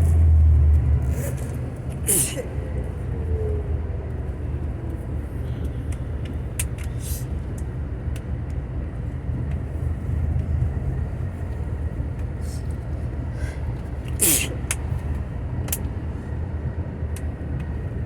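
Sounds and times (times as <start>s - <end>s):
bus engine and road noise: 0.0s - 18.0s.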